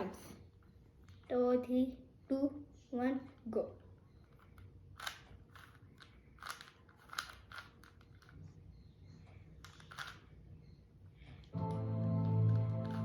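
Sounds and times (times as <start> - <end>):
puzzle cube plastic clicks: 4.3 - 8.5, 9.6 - 10.4.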